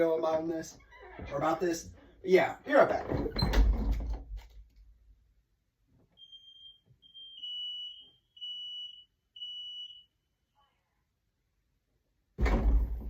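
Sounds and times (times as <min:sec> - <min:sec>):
smoke alarms beeping: 0:06.2 - 0:10.2.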